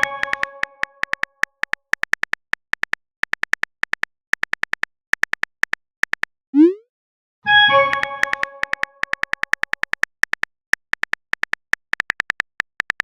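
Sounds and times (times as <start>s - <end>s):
smartphone keyboard typing ticks: 0.0s - 6.3s, 7.7s - 13.0s
chat notification chime: 7.5s - 9.0s.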